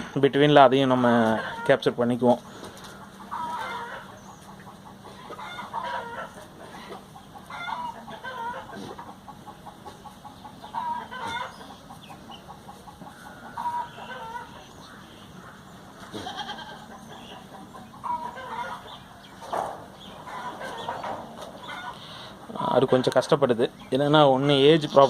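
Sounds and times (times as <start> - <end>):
steady low hum: 0.0 - 25.0
fowl clucking: 1.1 - 1.8, 2.5 - 23.8.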